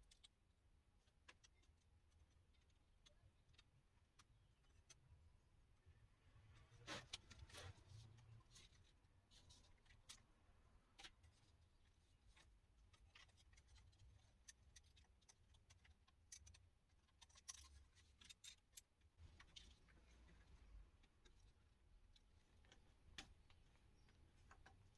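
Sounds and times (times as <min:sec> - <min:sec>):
small screws and plastic clicking: 0:00.0 - 0:05.0, 0:10.9 - 0:24.9.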